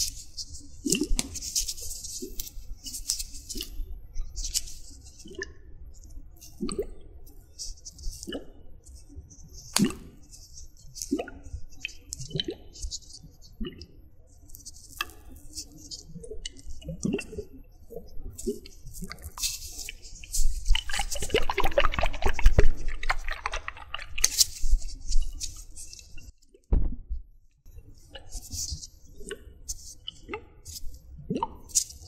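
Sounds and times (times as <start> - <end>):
wet squelching: 18.3 - 26.3
dripping: 18.4 - 26.3.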